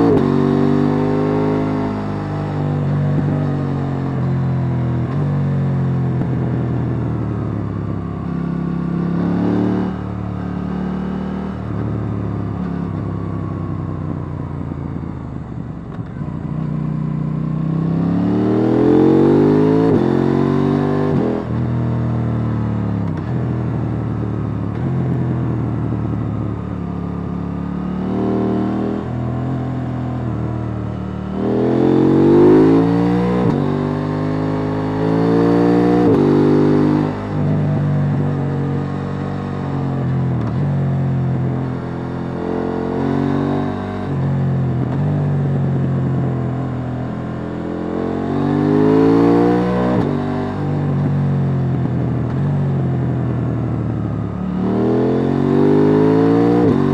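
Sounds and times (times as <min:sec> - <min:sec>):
motorcycle engine revving: 0:16.1 - 0:56.9.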